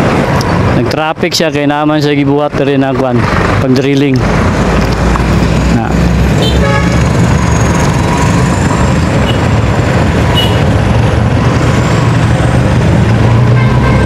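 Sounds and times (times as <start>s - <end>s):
road traffic rumble: 0.0s - 14.0s.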